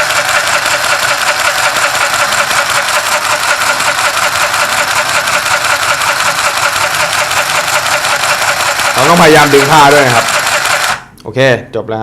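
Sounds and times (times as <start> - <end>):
sewing machine clattering: 0.0 - 11.0.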